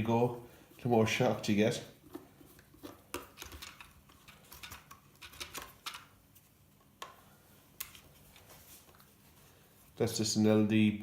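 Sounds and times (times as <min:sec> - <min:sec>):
plastic parts clicking and tapping: 0:02.8 - 0:06.2.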